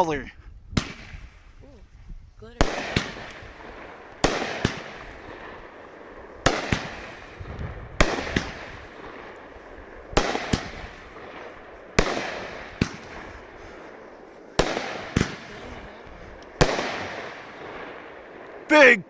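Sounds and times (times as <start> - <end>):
rush of burning firework stars: 0.0 - 19.0
firework bangs: 0.7 - 1.6, 2.5 - 19.0.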